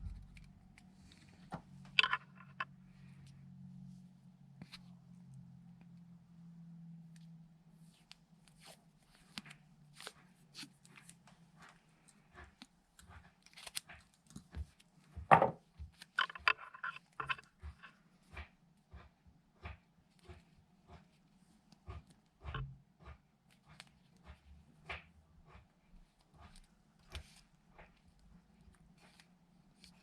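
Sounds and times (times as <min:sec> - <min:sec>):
tools and parts clicking: 0:02.0 - 0:02.6, 0:15.3 - 0:17.9.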